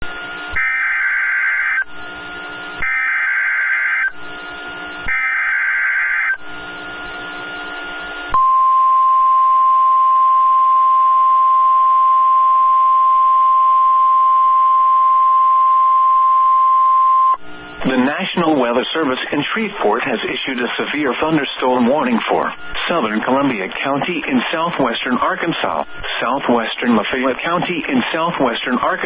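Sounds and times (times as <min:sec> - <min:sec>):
steady alarm tone: 0:00.1 - 0:26.9
radio hiss: 0:17.7 - 0:29.0.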